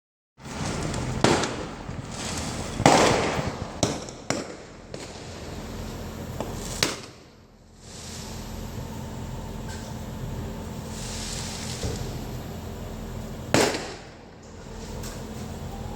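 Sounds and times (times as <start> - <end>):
firework shells bursting: 0.4 - 8.5, 13.5 - 15.3
rolling rumble: 0.4 - 15.9.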